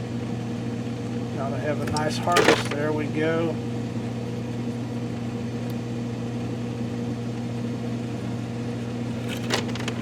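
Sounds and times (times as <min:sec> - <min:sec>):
refrigerator humming: 0:00.0 - 0:10.0
clicks and clatter: 0:09.2 - 0:10.0.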